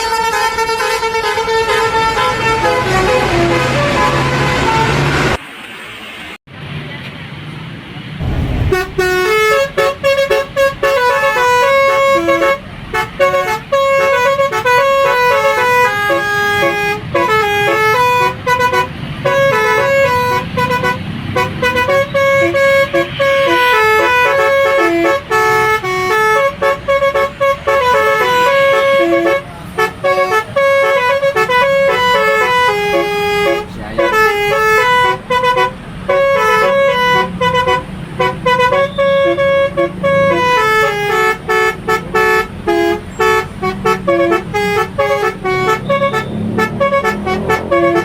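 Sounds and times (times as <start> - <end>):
musical air horn melody: 38.6 - 48.0.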